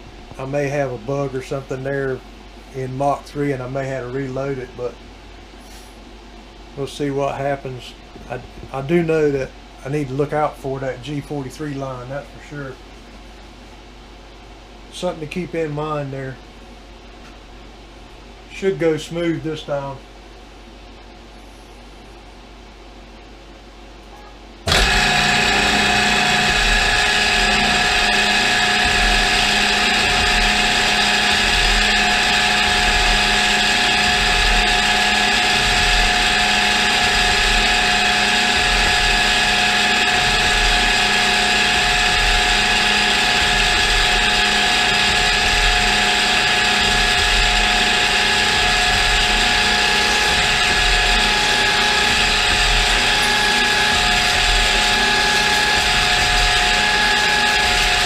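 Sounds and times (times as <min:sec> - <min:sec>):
milling machine whine: 0:24.6 - 0:58.0.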